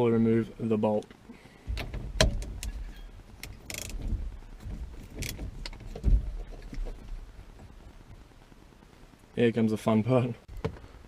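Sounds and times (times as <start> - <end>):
dull thud: 1.6 - 7.2.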